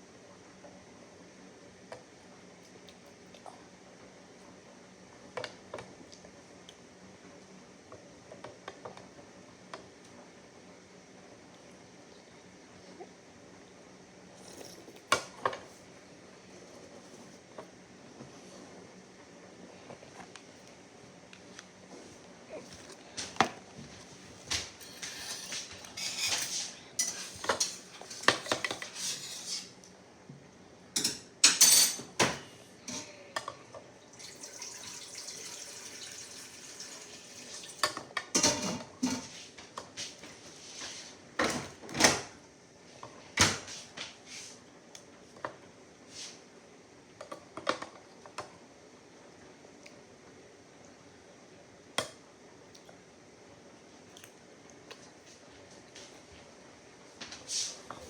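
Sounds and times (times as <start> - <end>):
cutlery clinking against dishes: 24.8 - 29.7, 31.0 - 32.3.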